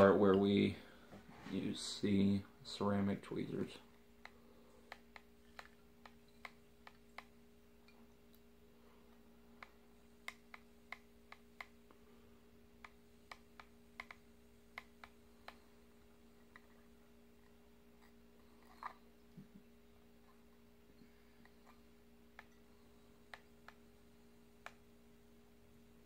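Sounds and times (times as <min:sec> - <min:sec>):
faint steady hum: 0:00.0 - 0:26.0
small irregular clicks: 0:03.9 - 0:08.5, 0:09.5 - 0:12.0, 0:12.8 - 0:19.6, 0:21.3 - 0:25.0.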